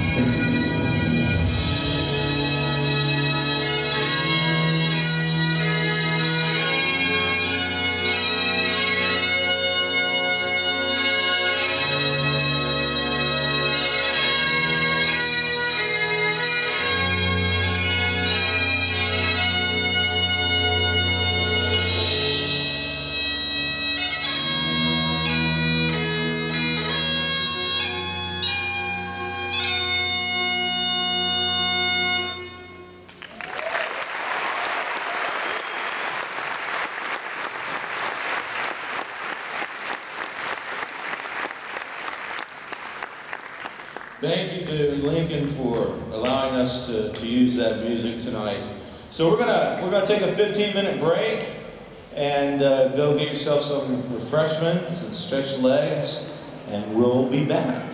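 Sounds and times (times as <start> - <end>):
bagpipes playing a tune: 0.0 - 33.2.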